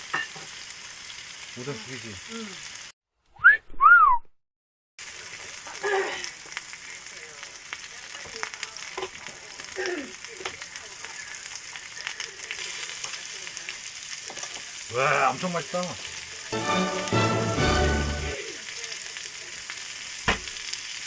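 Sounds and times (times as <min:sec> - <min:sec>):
meat sizzling on a grill: 0:00.0 - 0:03.0, 0:05.0 - 0:21.0
whistle-like tones: 0:03.4 - 0:04.3.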